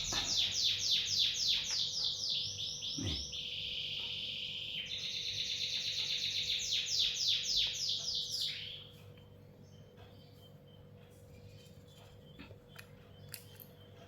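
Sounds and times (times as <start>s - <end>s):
lovebird chattering and chirping: 0.0s - 3.8s.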